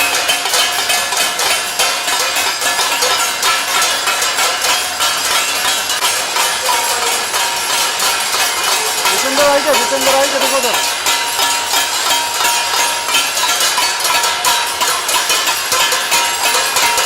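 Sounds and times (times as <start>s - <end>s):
many people clapping: 0.0s - 17.0s
metallic clinks and ringing tones: 0.0s - 17.0s.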